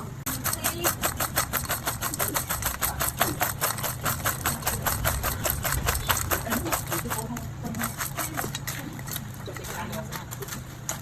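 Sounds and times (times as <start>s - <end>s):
rapid even strikes: 0.3s - 9.3s
low hum: 2.2s - 9.3s.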